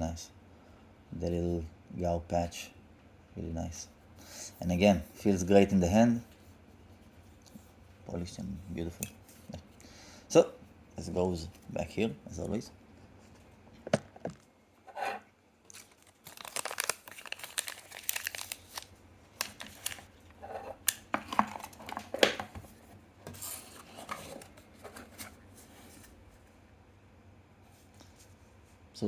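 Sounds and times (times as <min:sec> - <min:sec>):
packaging rustling and crinkling: 0:15.7 - 0:26.2.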